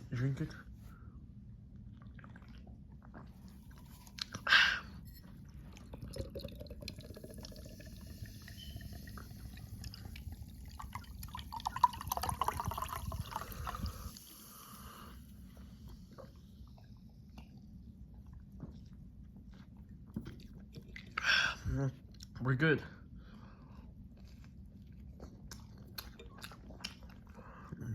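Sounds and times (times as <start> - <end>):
liquid pouring and fizzing: 5.5 - 21.2.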